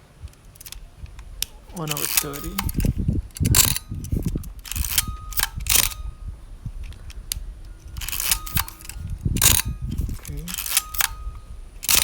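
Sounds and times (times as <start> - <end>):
film-advance lever clicks: 0.3 - 6.2, 6.8 - 12.0
camera shutter clacks: 1.4 - 6.1, 8.0 - 12.0.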